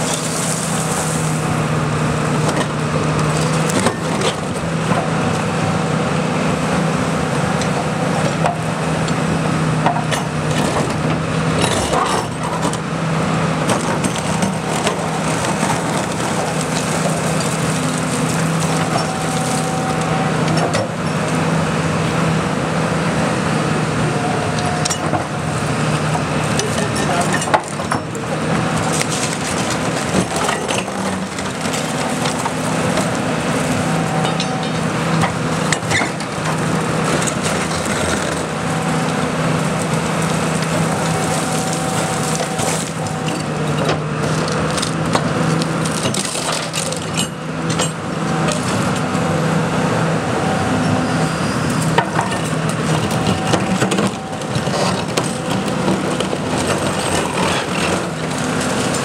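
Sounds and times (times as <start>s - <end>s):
excavator diesel engine: 0.0s - 59.0s
debris crunching and cracking: 13.6s - 20.7s, 24.8s - 49.0s, 51.9s - 59.0s.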